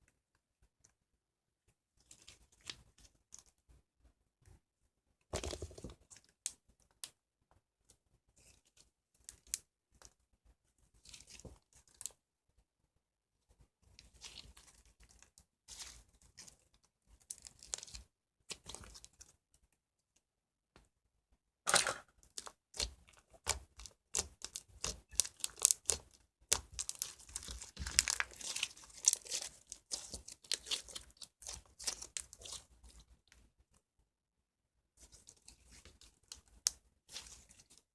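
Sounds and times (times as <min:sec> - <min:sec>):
slime crackling and popping: 0:22.8 - 0:32.6.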